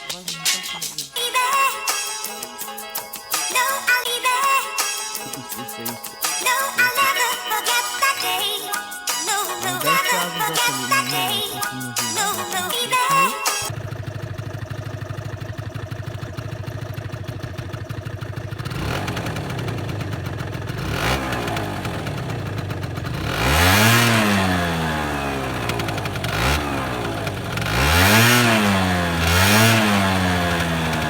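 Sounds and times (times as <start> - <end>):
scooter engine idling and revving: 13.6 - 31.0.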